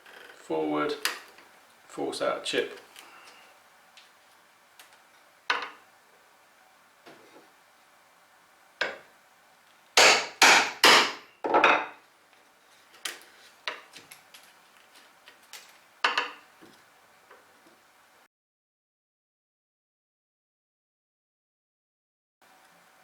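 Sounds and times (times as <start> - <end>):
hammer striking chisel into wood: 10.0 - 11.2.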